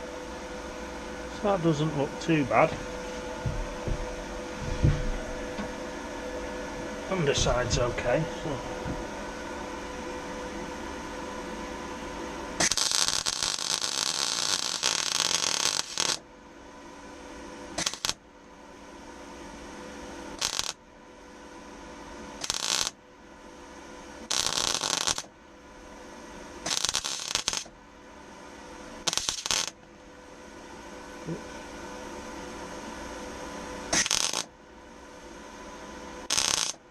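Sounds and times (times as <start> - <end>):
steady hum: 0.0 - 36.9
welding arc crackling: 12.6 - 16.2, 17.8 - 18.2, 20.3 - 20.8, 22.4 - 23.0, 24.2 - 25.3, 26.6 - 27.7, 29.0 - 29.9, 33.9 - 34.5, 36.2 - 36.9.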